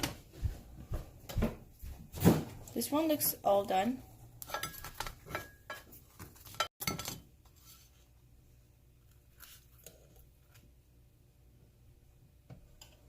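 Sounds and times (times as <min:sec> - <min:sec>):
kitchen utensils and dishes clinking: 0:04.4 - 0:07.3.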